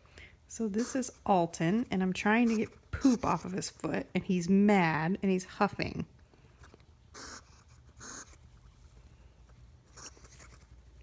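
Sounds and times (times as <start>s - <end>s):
hedgehog huffing: 2.4s - 3.6s, 7.1s - 8.4s, 9.8s - 10.8s.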